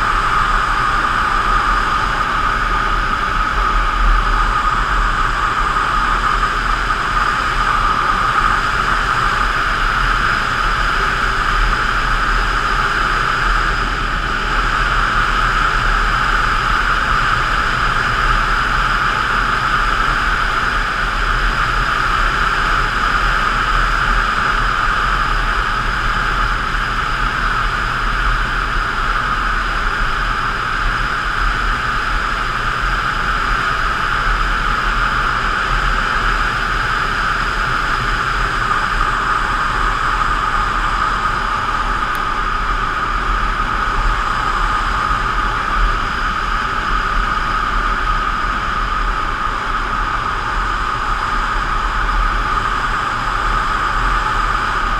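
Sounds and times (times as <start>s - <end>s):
wind and road noise: 0.0s - 54.9s.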